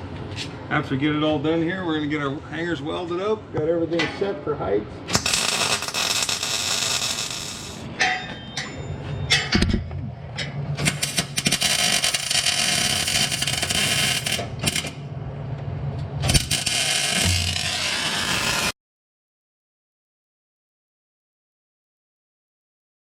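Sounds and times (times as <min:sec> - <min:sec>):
welding arc crackling and hissing: 0:05.1 - 0:07.9, 0:10.8 - 0:15.0, 0:16.3 - 0:18.7.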